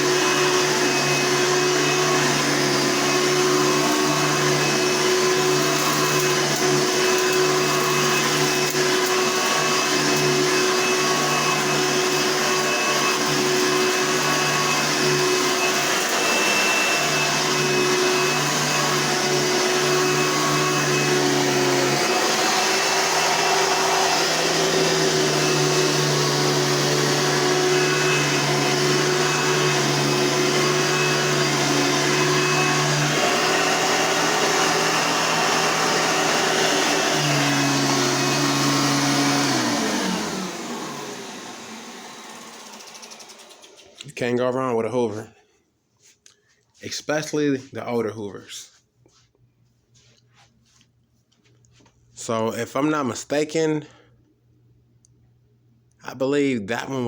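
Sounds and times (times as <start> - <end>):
vacuum cleaner motor hum: 0.0 - 44.0.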